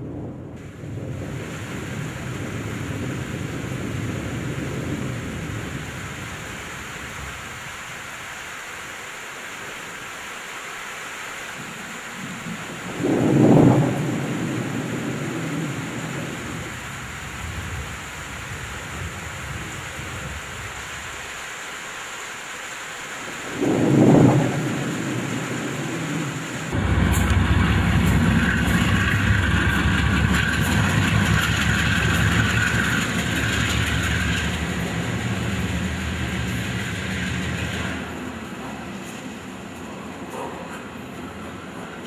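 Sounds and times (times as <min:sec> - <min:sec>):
train rumbling on tracks: 0:23.4 - 0:42.0.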